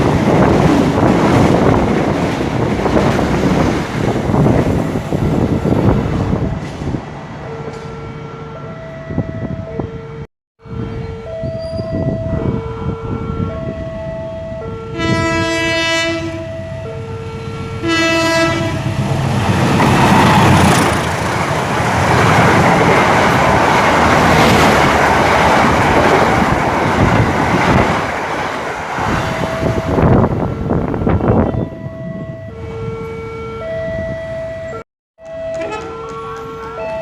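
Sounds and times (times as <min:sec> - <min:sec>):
train passing rumble: 0:00.0 - 0:37.0
two-tone warning alarm: 0:07.5 - 0:18.8, 0:29.2 - 0:37.0
train horn: 0:14.8 - 0:19.1, 0:35.5 - 0:36.4.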